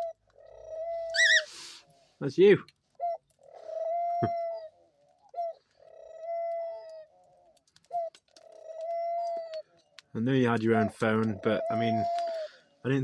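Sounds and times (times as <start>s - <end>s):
dove cooing: 0.0s - 1.5s, 3.0s - 9.8s, 10.7s - 12.7s.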